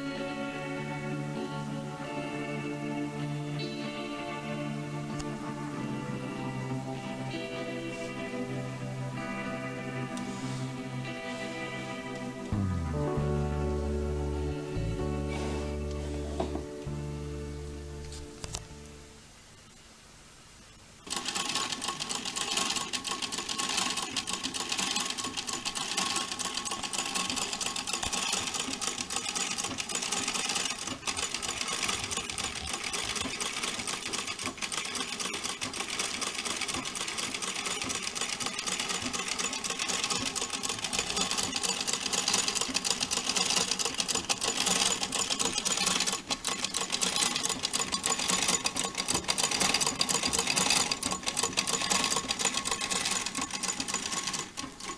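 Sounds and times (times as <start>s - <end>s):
sewing machine clatter: 21.0s - 54.9s.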